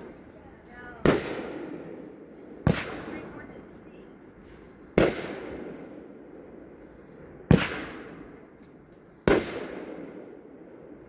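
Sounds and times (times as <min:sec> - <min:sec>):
firework booms with rumble: 0:01.0 - 0:03.6, 0:04.4 - 0:06.0, 0:07.5 - 0:08.3, 0:09.3 - 0:10.3.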